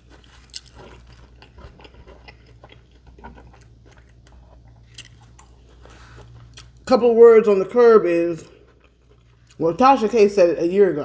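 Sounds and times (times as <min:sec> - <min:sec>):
person chewing food: 0:00.0 - 0:06.9, 0:08.4 - 0:09.8
steady low hum: 0:00.0 - 0:11.0.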